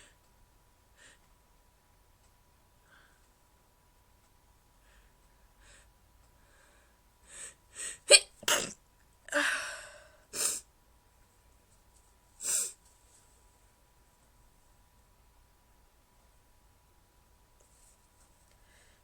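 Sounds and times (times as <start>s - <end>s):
person stifling sneezes: 8.1s - 9.6s.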